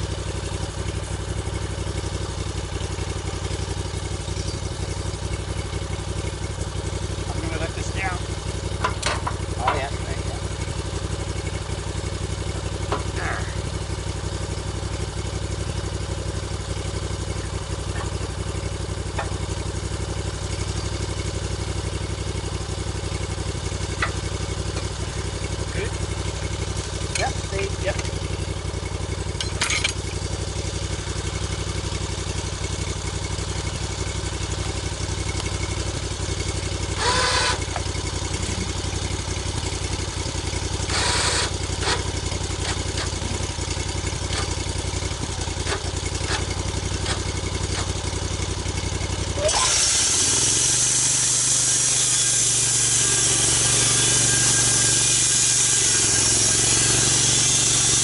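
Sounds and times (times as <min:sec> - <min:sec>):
saw engine running: 0:00.0 - 0:58.0
saw cutting log hiss: 0:36.6 - 0:48.3, 0:49.3 - 0:58.0.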